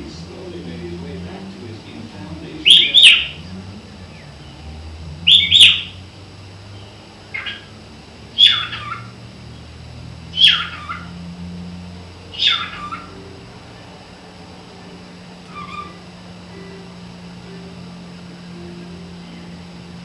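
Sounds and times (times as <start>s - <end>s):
cockatiel calling harshly: 2.5s - 4.6s, 5.2s - 6.2s, 6.8s - 11.3s, 12.3s - 19.9s.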